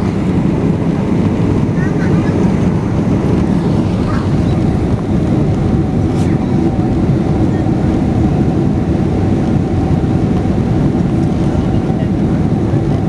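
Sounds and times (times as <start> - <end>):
jet engine roar in cabin: 0.0 - 13.0.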